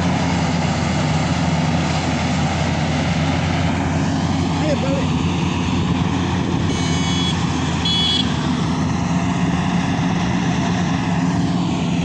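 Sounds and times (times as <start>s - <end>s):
combine harvester engine running: 0.0s - 12.0s
short electronic beeps: 6.7s - 8.3s.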